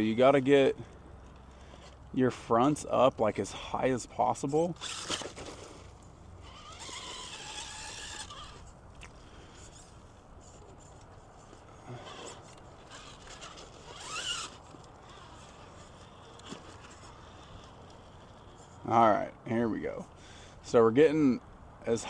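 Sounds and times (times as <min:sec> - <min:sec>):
electric motor whining: 0:06.4 - 0:08.7, 0:09.5 - 0:18.2.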